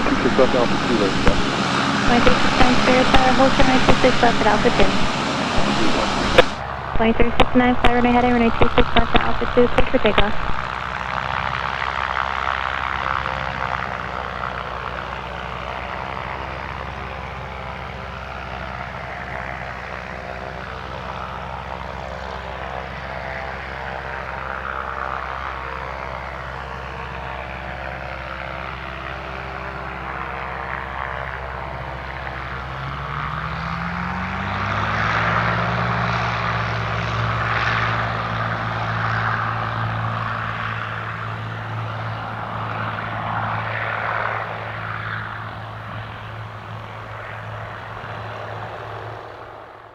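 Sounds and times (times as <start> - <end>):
propeller plane engine running: 0.0 - 49.9.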